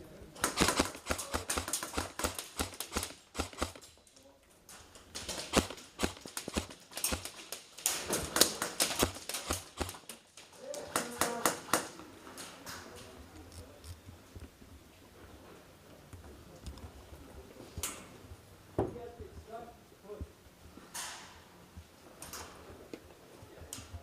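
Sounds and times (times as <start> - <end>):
fast running footsteps: 5.3 - 7.6, 8.3 - 10.0.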